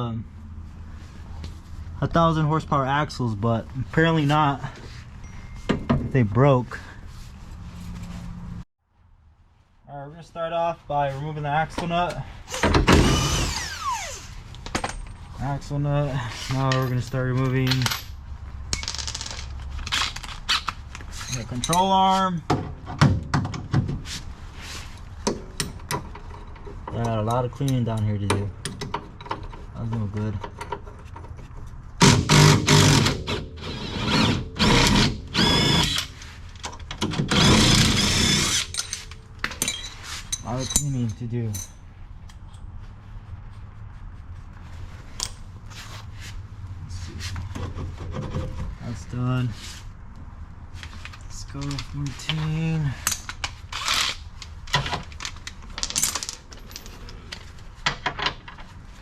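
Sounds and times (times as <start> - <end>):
power tool motor whine: 12.9 - 14.3, 32.3 - 36.1
metal sockets and tools clinking: 38.2 - 41.8.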